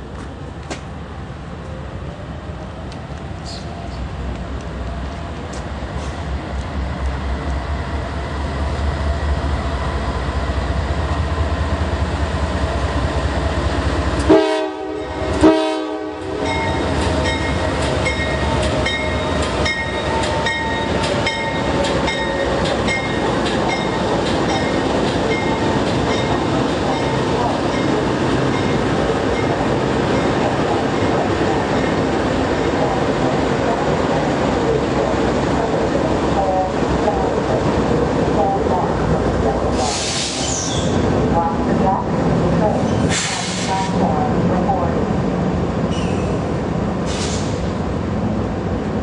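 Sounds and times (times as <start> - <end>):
train rumble: 0.0 - 49.0
locomotive horn blasts: 14.2 - 16.6
train wheels clicking over rail joints: 16.5 - 29.6.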